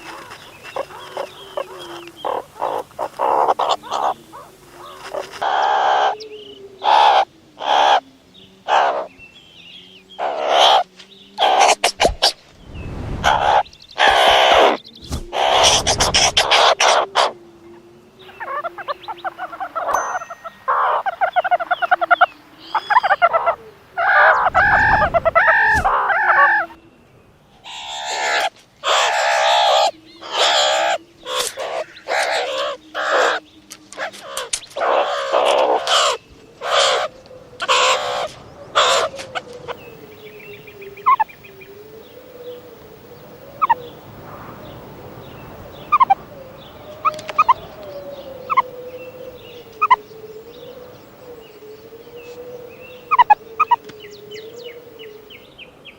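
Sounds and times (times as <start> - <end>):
meerkats calling harshly: 0.1 - 6.2, 11.4 - 12.4, 13.2 - 17.3, 22.8 - 26.8, 27.6 - 33.4, 34.0 - 39.1, 45.9 - 46.2, 53.0 - 53.8
faint wavering tone: 19.8 - 22.7
meerkat chirps: 53.1 - 53.8.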